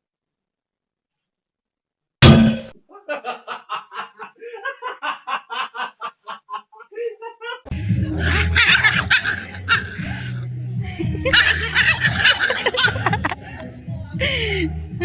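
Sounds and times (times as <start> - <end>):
person laughing: 2.9 - 13.5
music: 7.7 - 15.0.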